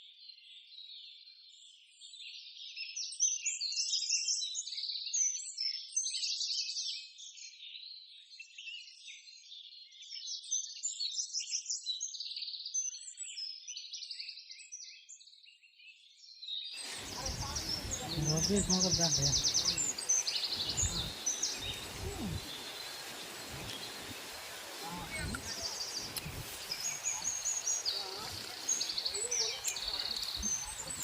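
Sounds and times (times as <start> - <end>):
birds chirping: 16.8 - 31.0.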